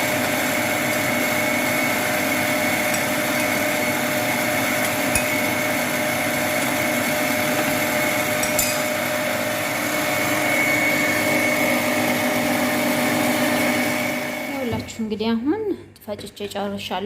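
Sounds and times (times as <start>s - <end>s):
electric mixer whine: 0.0s - 15.0s.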